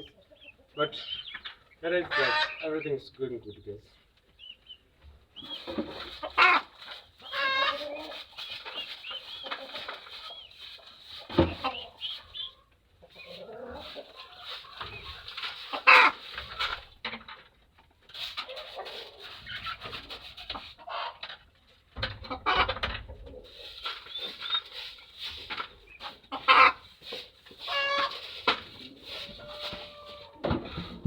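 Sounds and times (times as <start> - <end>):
chickens clucking: 0.0 - 31.0
chicken squawks: 2.1 - 2.6, 5.4 - 8.2, 15.1 - 16.7, 26.0 - 26.9, 27.6 - 28.4.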